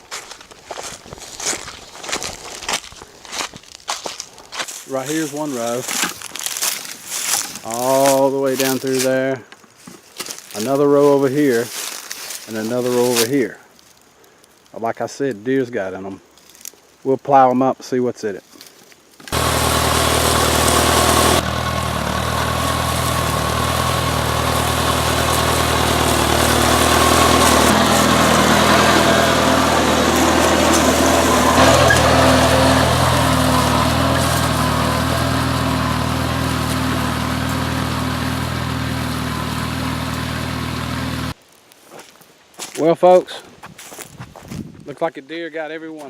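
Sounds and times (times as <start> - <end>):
tiller engine running: 19.2 - 41.4.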